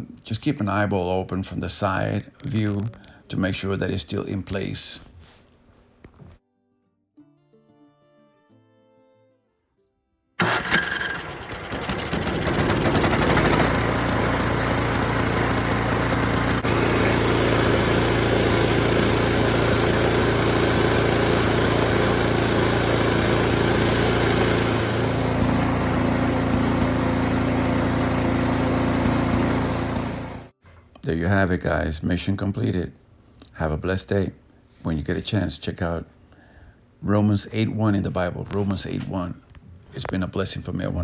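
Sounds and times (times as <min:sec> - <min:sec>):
snowblower engine running: 0:10.4 - 0:30.6.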